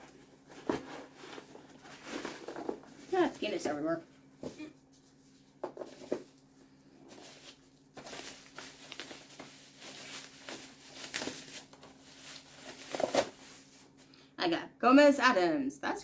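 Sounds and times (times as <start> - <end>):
packaging crinkling and rustling: 0.0 - 3.8, 5.1 - 14.1.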